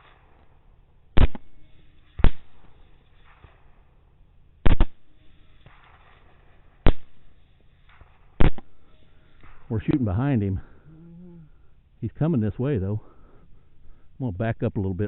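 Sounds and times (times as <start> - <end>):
suppressed pistol shots: 1.2 - 3.8, 4.6 - 8.8.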